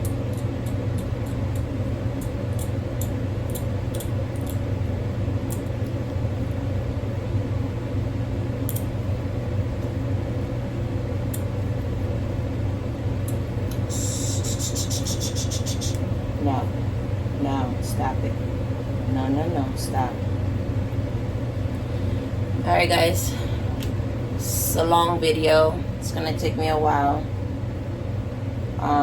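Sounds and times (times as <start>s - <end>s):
low machine hum: 0.0s - 29.0s
dental tool scraping teeth: 13.8s - 16.0s.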